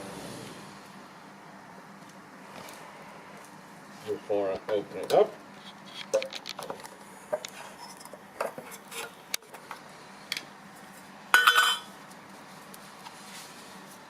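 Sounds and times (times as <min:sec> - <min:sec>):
sharp metallic clank: 0:11.4 - 0:11.9.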